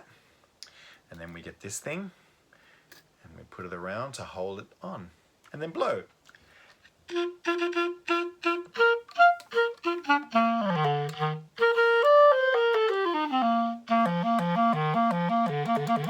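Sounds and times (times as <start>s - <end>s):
clarinet playing solo: 7.1s - 16.0s.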